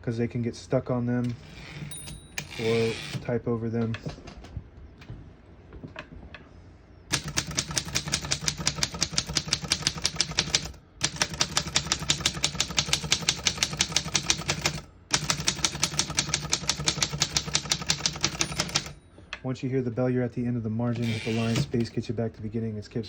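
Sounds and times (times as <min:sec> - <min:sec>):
typewriter key strikes: 0:07.1 - 0:19.0.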